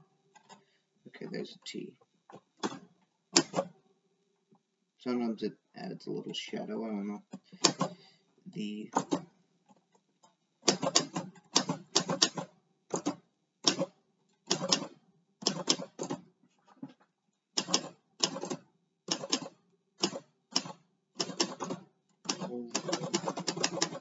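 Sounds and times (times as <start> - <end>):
manual typewriter typing: 3.4 - 3.7, 7.6 - 8.0, 10.7 - 13.9, 14.5 - 16.2, 17.6 - 24.0.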